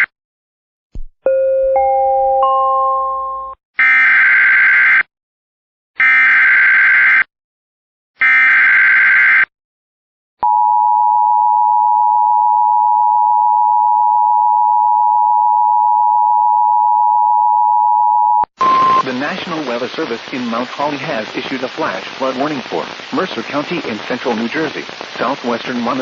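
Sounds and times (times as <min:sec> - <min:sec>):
two-tone attention signal: 0:17.9 - 0:19.1.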